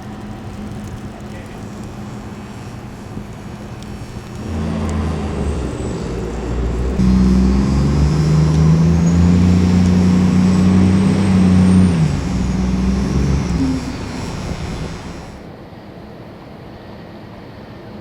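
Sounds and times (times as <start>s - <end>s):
vehicle engine running: 0.8s - 15.5s
faint high whine: 1.5s - 15.5s.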